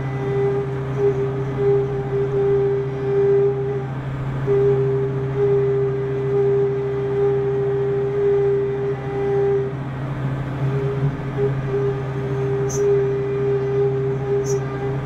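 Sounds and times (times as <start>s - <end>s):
machine hum: 0.0s - 15.0s
held mid-pitched tone: 10.8s - 15.0s.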